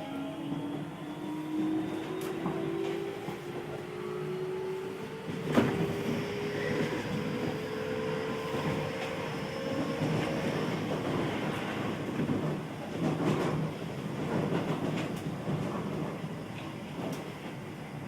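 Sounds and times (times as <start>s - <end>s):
train wheel and running noise: 0.0s - 18.0s.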